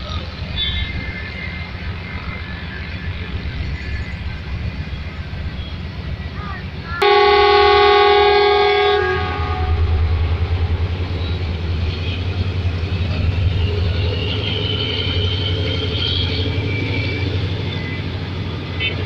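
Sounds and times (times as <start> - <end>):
locomotive engine rumbling: 0.0 - 19.0
locomotive horn: 7.0 - 12.6, 18.7 - 19.0
faint high squeal: 8.7 - 19.0.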